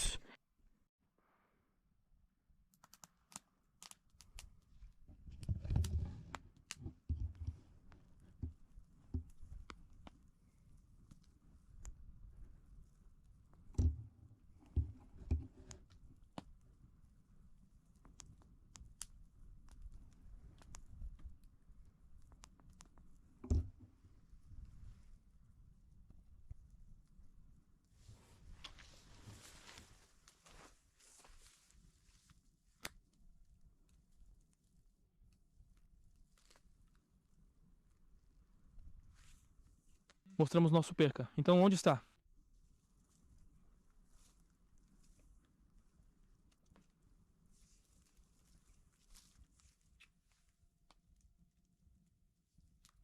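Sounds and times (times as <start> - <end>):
muffled rustle and knock: 5.1 - 9.6, 13.7 - 15.8
faint small taps and clicks: 13.5 - 16.7, 17.9 - 23.9.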